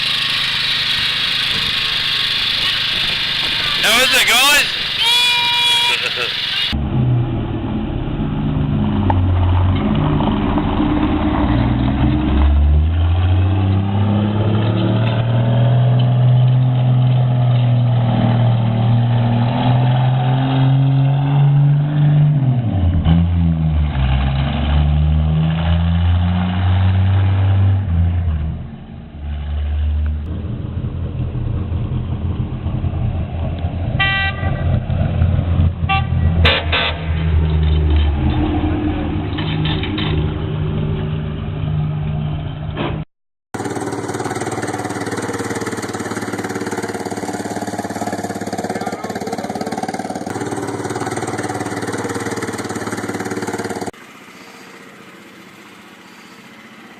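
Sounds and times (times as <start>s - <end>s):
small engine running under load: 0.0s - 6.8s, 43.6s - 56.9s
horn toot: 2.6s - 6.8s, 34.0s - 34.8s, 35.9s - 37.2s.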